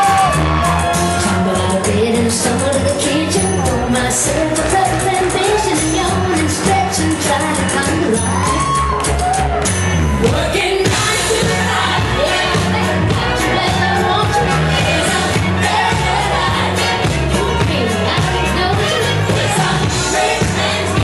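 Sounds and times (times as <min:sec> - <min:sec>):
crowd shouting: 0:00.0 - 0:01.8, 0:08.3 - 0:21.0
pop song with dance beat: 0:00.0 - 0:21.0.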